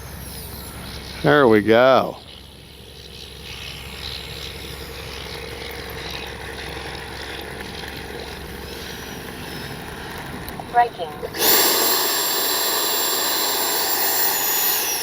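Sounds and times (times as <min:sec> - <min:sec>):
electric ducted fan whining: 0:00.0 - 0:15.0.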